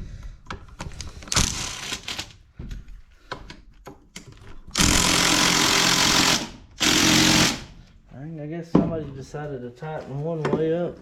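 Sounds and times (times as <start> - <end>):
tools clicking and knocking: 0.4 - 5.2
impact driver hammering: 4.8 - 7.8.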